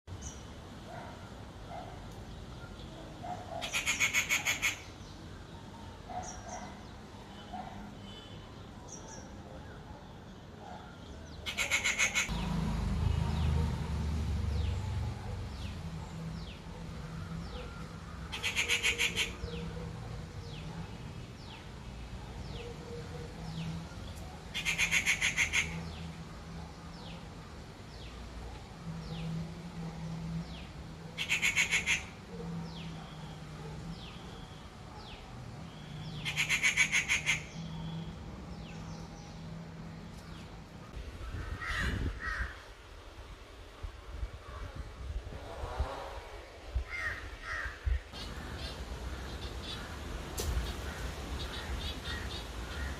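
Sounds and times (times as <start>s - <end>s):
bird harsh screeching calls: 3.5s - 5.0s, 11.4s - 12.4s, 18.3s - 19.8s, 24.5s - 26.0s, 31.2s - 32.2s, 35.8s - 38.0s.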